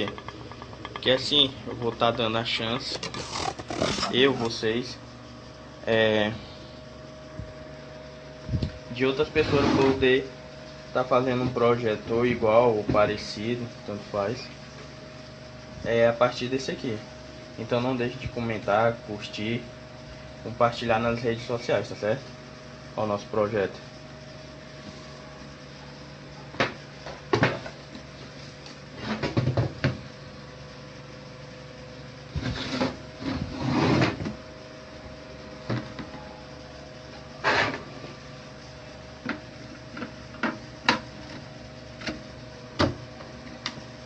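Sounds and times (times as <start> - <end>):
rustling and scraping: 0.0 - 4.7, 32.3 - 34.3, 37.2 - 38.2
low electrical hum: 0.0 - 44.0.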